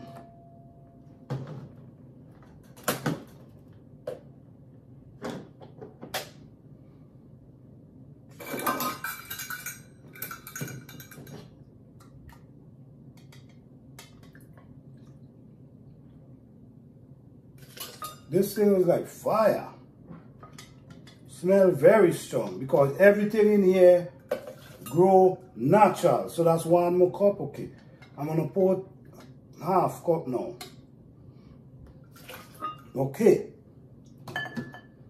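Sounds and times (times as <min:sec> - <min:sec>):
kitchen utensils clinking: 0:08.3 - 0:11.6, 0:17.6 - 0:18.3.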